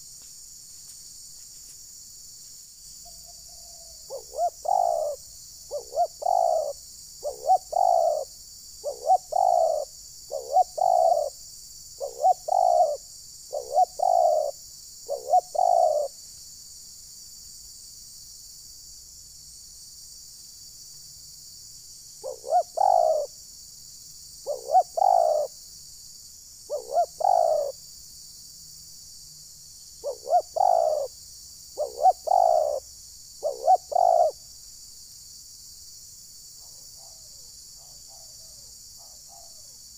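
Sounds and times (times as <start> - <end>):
insect chorus: 0.0 - 39.9
dove cooing: 3.1 - 11.4, 12.0 - 16.2, 22.2 - 23.4, 24.4 - 25.5, 26.7 - 27.8, 30.0 - 31.1, 31.8 - 32.8, 33.4 - 34.4, 37.8 - 39.8.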